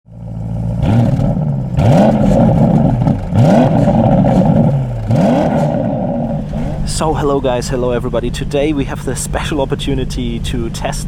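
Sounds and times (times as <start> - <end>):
car engine revving: 0.6 - 7.9.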